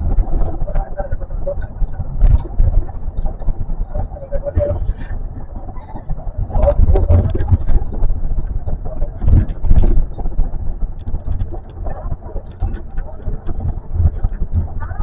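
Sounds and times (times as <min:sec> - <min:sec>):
train running low rumble: 0:00.0 - 0:15.0
knocks and rattles: 0:01.9 - 0:15.0.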